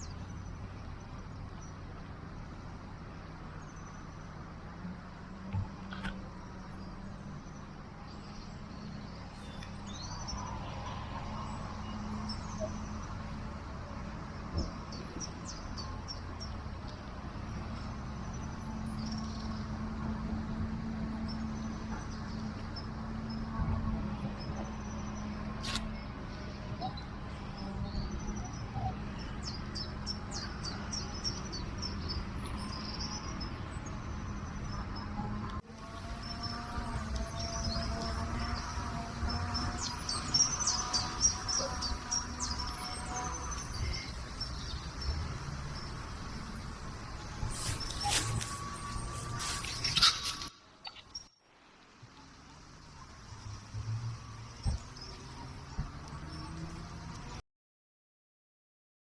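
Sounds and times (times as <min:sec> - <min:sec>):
songbird singing: 0:00.0 - 0:57.4
bird chirps: 0:35.9 - 0:51.4.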